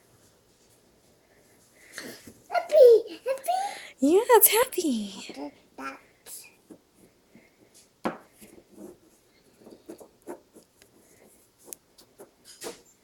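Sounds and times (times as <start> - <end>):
crayons scratching on paper: 8.4 - 12.7.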